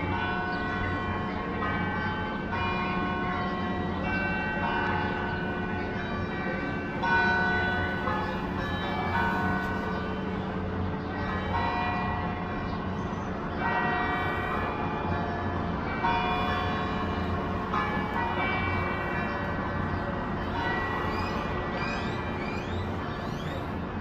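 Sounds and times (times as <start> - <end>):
church bells ringing: 0.0 - 24.0
birds chirping: 18.4 - 23.8.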